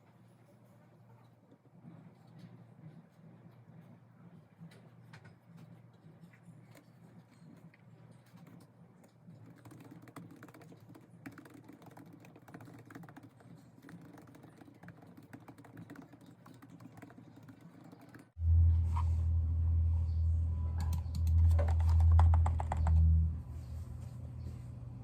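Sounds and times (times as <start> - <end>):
steady low hum: 18.3 - 25.0
loud low sound: 18.4 - 20.8.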